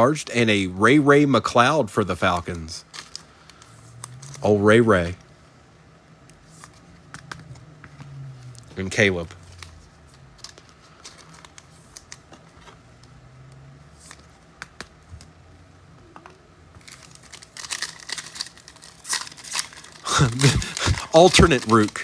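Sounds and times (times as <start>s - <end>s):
foil wrappers rustling: 2.2s - 4.6s, 16.8s - 22.0s.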